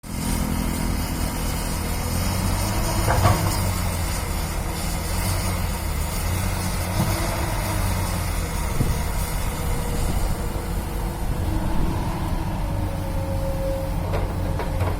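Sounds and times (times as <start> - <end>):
diesel engine running: 0.0 - 14.9.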